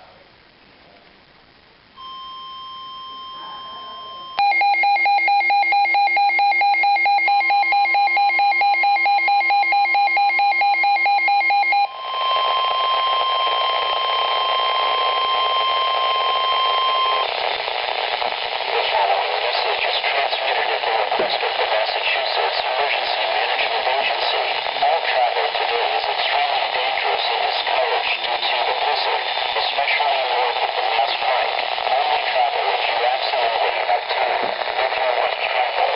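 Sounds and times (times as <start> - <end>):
steady alarm tone: 2.0 - 17.3
radio static: 11.5 - 35.9.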